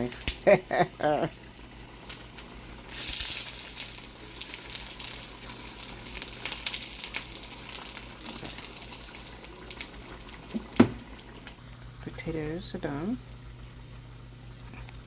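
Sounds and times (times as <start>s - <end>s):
food sizzling in a pan: 1.2s - 11.6s
hot oil spitting: 1.2s - 11.6s.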